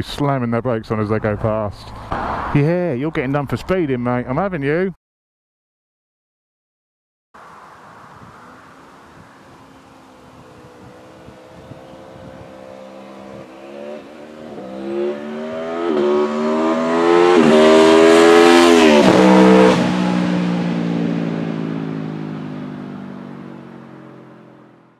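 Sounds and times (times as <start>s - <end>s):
vehicle accelerating through gears: 7.4s - 24.5s.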